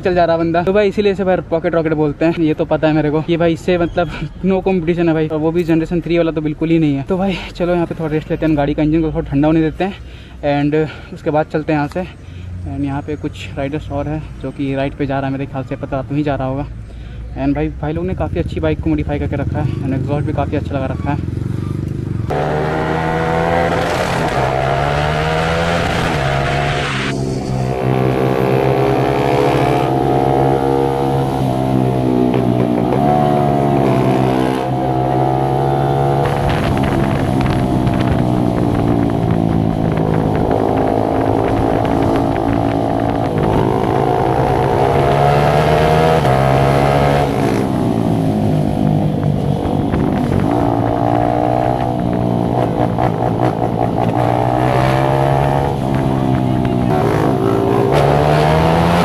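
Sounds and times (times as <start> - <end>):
motorcycle engine revving: 19.2 - 59.0.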